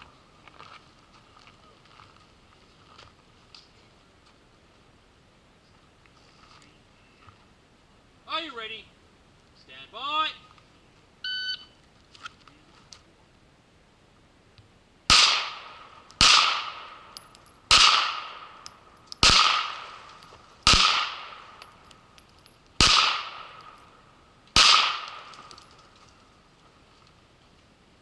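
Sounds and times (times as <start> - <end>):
handgun shots with echo: 15.1 - 18.6, 19.2 - 20.0, 20.6 - 21.7, 22.8 - 23.8, 24.6 - 25.5.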